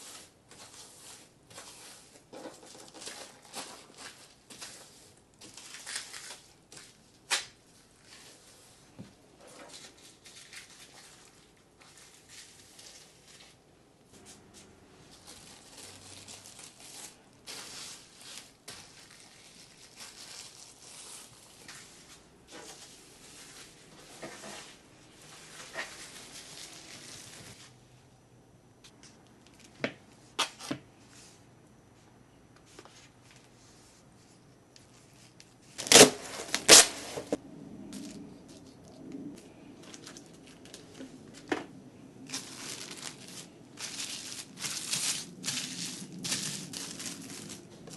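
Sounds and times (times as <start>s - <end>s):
plastic packaging crinkling: 0.5s - 8.4s, 9.6s - 13.6s, 15.1s - 24.0s, 25.3s - 27.6s, 35.4s - 37.4s, 39.3s - 41.5s, 42.2s - 47.9s.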